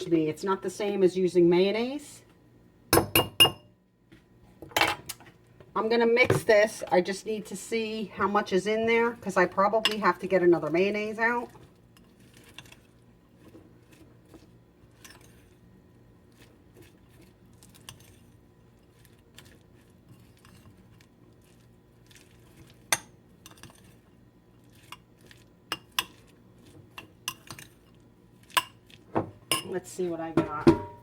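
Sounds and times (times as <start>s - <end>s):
spoon stirring in a bowl: 8.2s - 30.9s.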